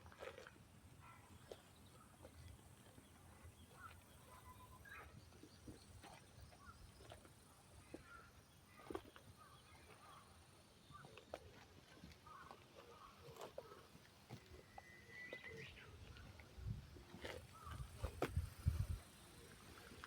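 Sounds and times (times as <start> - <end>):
faint chirps: 14.4 - 16.4.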